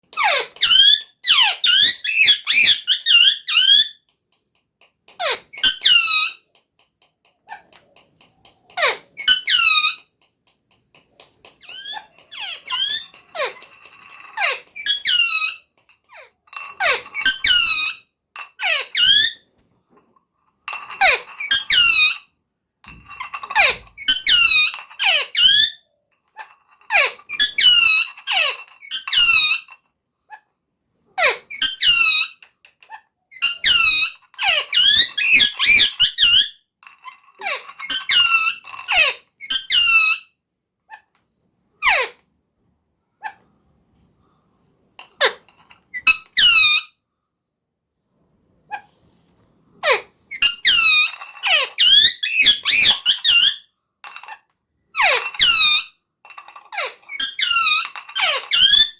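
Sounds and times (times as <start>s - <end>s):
parrot squawking: 14.4s - 15.6s, 49.8s - 53.6s, 56.7s - 58.9s.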